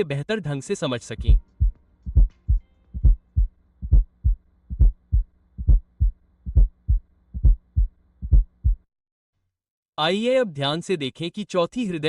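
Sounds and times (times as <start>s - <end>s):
heartbeat gallop rhythm: 1.2s - 8.9s.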